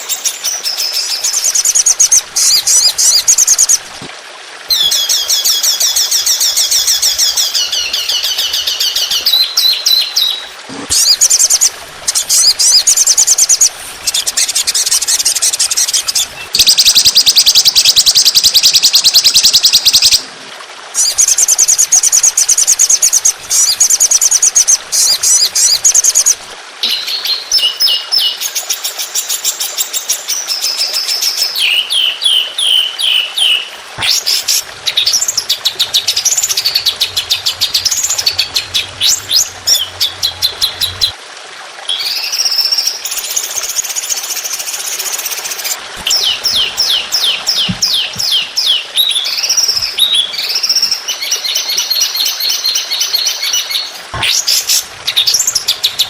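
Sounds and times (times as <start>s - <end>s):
songbird trilling: 31.6s - 41.1s, 46.0s - 52.0s.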